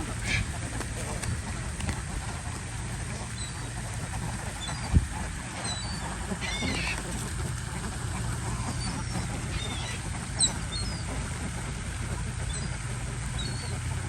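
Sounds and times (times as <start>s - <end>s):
birds calling: 0.0s - 14.0s
steady low rumble: 0.0s - 14.0s.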